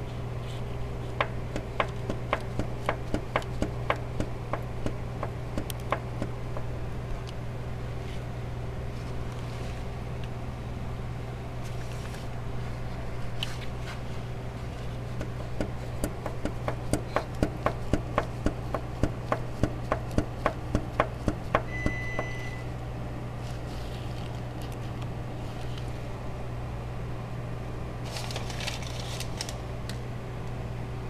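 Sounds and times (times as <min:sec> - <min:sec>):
steady low hum: 0:00.0 - 0:31.0
sharp knocks: 0:01.2 - 0:06.7, 0:15.2 - 0:22.4
short high beep: 0:21.7 - 0:22.7.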